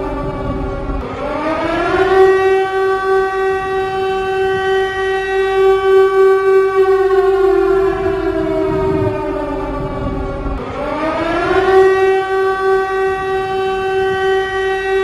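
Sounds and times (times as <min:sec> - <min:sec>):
civil defense siren wailing: 0:00.0 - 0:15.0.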